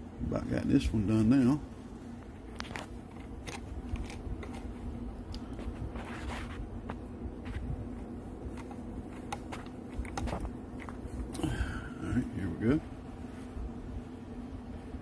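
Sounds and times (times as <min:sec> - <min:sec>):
steady low hum: 0:00.0 - 0:15.0
tool scraping: 0:05.5 - 0:11.2.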